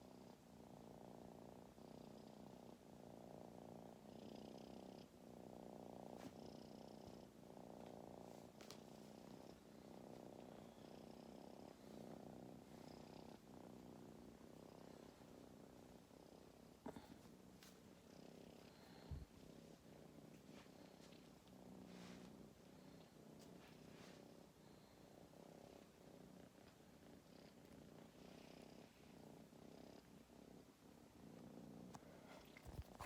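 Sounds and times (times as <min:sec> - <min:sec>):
kitten purring: 0:00.0 - 0:33.0.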